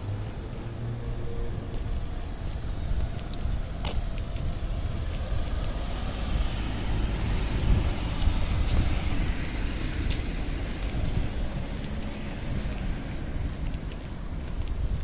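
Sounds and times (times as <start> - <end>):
city traffic hiss: 0.0 - 15.0
wind buffeting microphone: 0.0 - 15.0.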